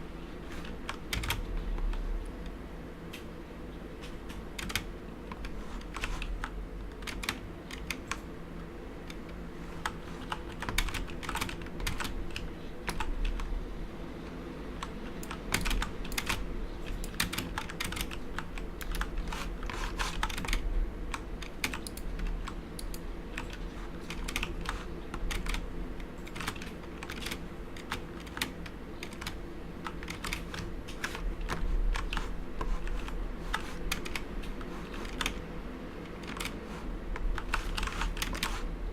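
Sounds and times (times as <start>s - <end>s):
low steady hum: 0.0s - 38.9s
mechanical keyboard keystroke clicks: 0.9s - 2.0s, 4.3s - 8.2s, 14.8s - 25.6s, 26.2s - 35.4s, 36.1s - 36.6s.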